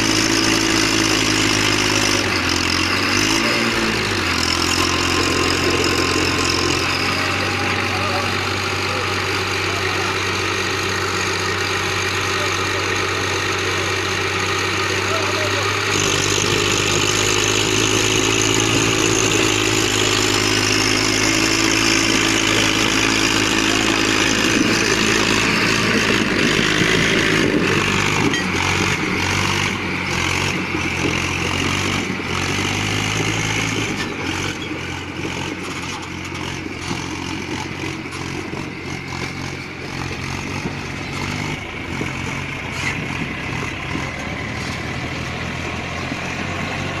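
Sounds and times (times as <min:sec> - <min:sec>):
tractor diesel engine running: 0:00.0 - 0:47.0.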